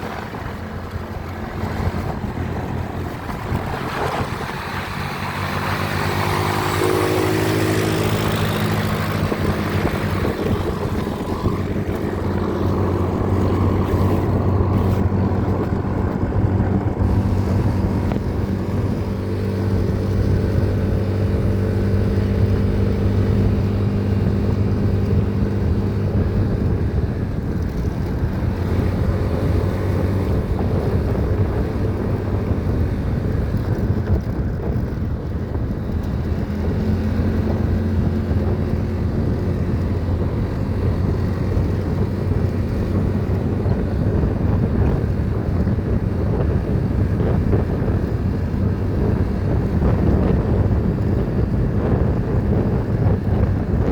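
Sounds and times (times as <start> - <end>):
vehicle engine humming: 0.0 - 53.9
wind buffeting microphone: 0.0 - 53.9.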